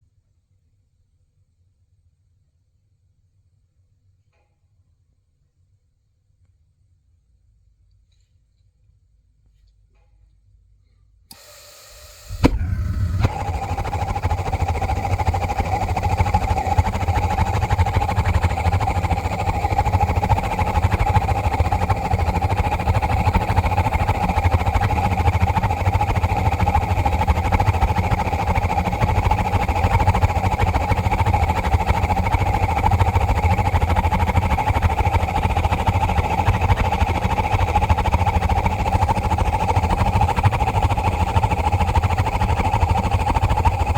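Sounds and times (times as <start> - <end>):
gas burner lighting and roaring: 11.3 - 43.9.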